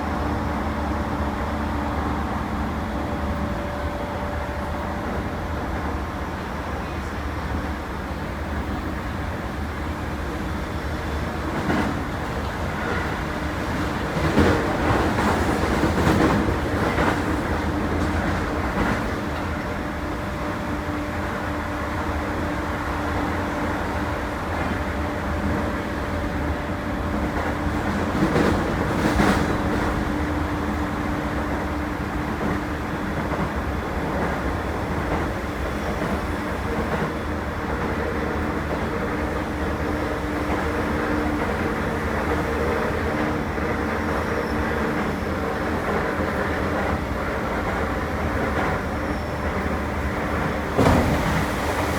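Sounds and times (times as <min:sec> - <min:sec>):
rail rumble: 0:00.0 - 0:51.9
wheel clunks on track: 0:50.5 - 0:51.9.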